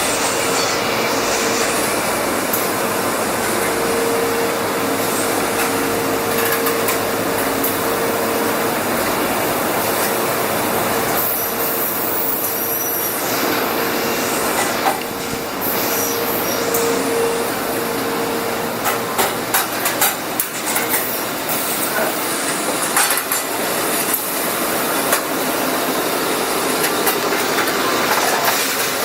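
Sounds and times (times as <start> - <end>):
constant machine hum: 0.0 - 29.0
machine hissing: 11.0 - 18.1.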